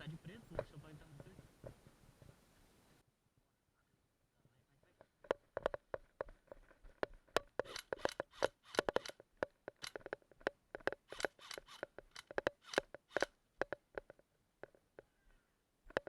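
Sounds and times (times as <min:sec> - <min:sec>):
sharp clicks: 0:05.0 - 0:15.1
rustling bursts: 0:05.1 - 0:13.4.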